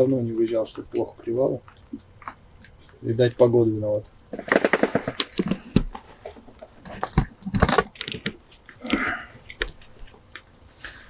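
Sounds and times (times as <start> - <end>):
rustling and crinkling with clicks: 4.0 - 11.0.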